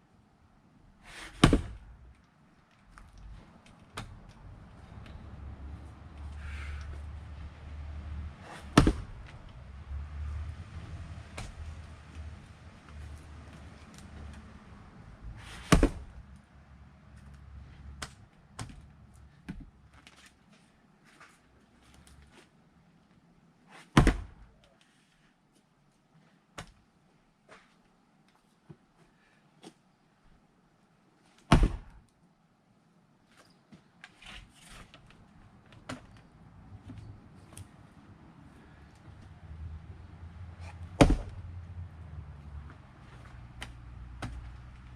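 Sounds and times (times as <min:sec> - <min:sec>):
axe splitting log: 0:01.1 - 0:01.8, 0:08.4 - 0:09.3, 0:15.4 - 0:16.2, 0:23.9 - 0:24.4, 0:31.5 - 0:32.0, 0:41.0 - 0:41.4, 0:43.6 - 0:44.5.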